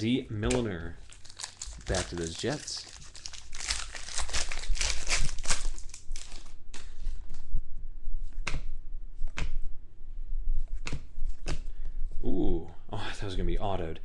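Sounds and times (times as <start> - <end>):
wrapper tearing and crinkling: 1.0 - 6.6.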